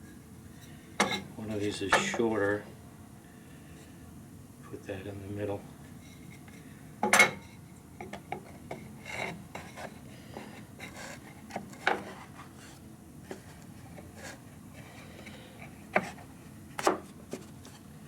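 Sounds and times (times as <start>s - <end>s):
wood rubbing and sliding on wood: 8.8s - 17.8s.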